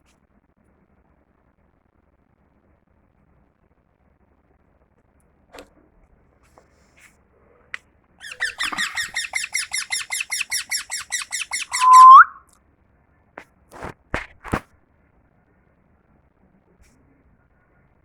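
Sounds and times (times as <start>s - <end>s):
parrot chirping: 8.2s - 12.4s
parrot whistle rising: 8.4s - 12.4s.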